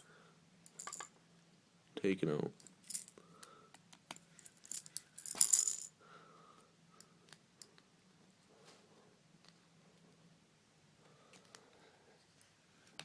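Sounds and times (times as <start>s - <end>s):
screws rattling in metal bowl: 0.7s - 1.1s.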